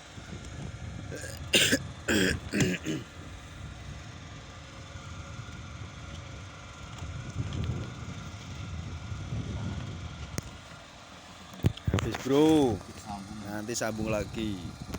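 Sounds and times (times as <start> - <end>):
steady low rumble: 0.0 - 10.7.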